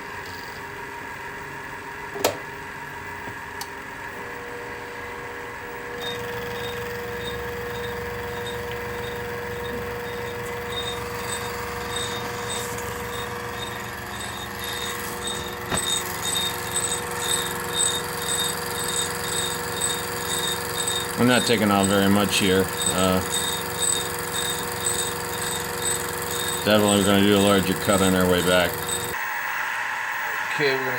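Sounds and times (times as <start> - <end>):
milling machine motor hum: 0.2 - 29.2
end mill cutting plastic: 5.9 - 29.2.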